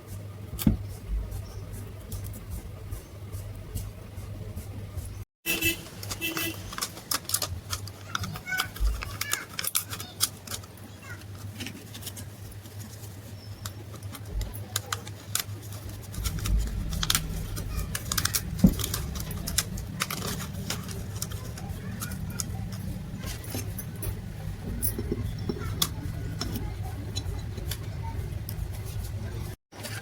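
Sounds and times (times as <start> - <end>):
low steady hum: 10.4 - 29.6.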